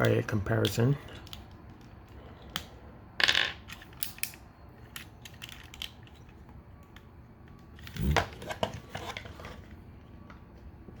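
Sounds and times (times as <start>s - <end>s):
plastic scrape: 8.0s - 9.8s.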